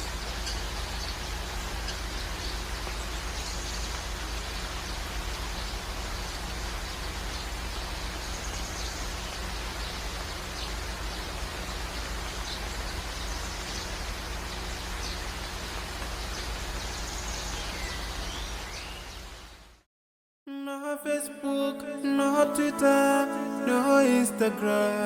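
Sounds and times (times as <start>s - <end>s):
steady rain-like hiss: 0.0s - 19.8s.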